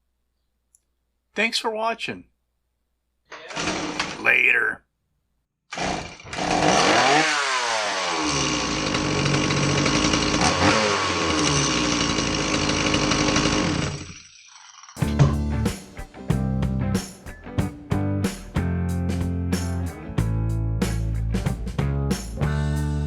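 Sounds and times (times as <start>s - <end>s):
chainsaw engine running: 3.5s - 4.2s, 5.7s - 15.6s.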